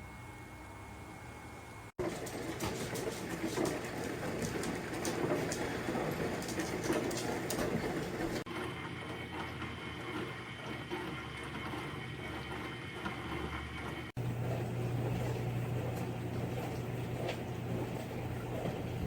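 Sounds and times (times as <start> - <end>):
dishwasher pump hum: 0.0 - 19.0
water spraying in dishwasher: 2.0 - 8.5, 11.0 - 19.0.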